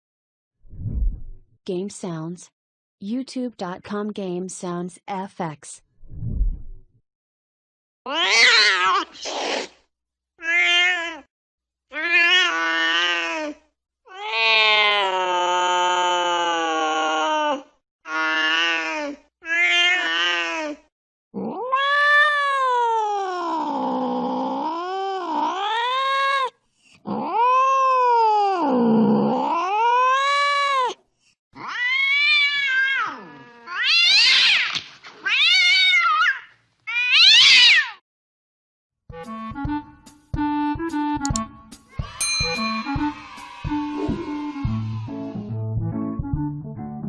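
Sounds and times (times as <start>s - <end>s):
angry cats yowling: 31.6s - 38.0s.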